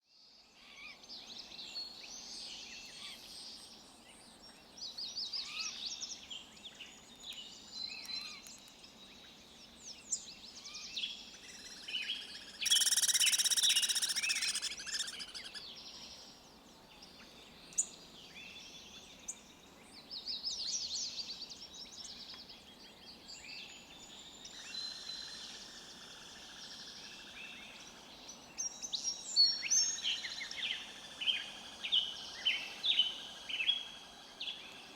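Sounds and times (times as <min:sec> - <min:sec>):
songbirds chirping and trilling: 0:00.0 - 0:34.9
faint background hiss: 0:00.1 - 0:34.9
loud buzzy bird chatter: 0:11.4 - 0:15.6.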